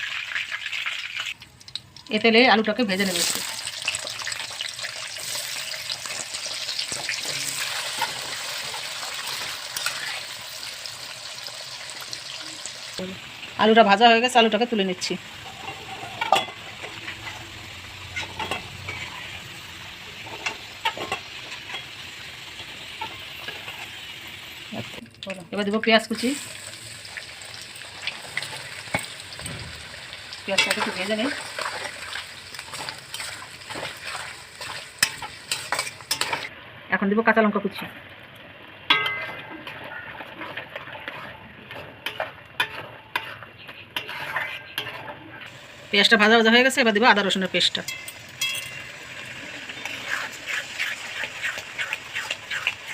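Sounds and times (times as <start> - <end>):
oil sizzling in a pan: 0.0 - 52.9
utensil scraping and clinking pan: 15.4 - 17.5, 18.1 - 19.4, 20.2 - 22.0, 30.5 - 36.5, 38.9 - 45.5, 47.8 - 52.9
metal spatula clinks and scrapes: 34.6 - 36.5, 38.9 - 43.4, 44.0 - 45.2, 47.9 - 49.0.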